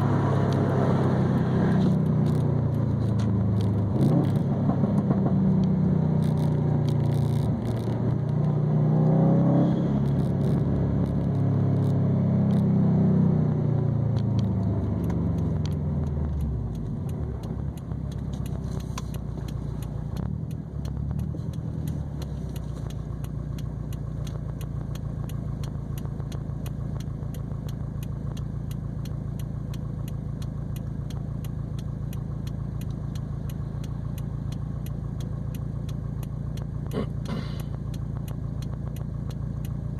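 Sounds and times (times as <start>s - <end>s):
car engine revving: 0.0s - 39.9s
engine low rumble: 0.0s - 39.9s
fast light ticking: 15.0s - 39.9s.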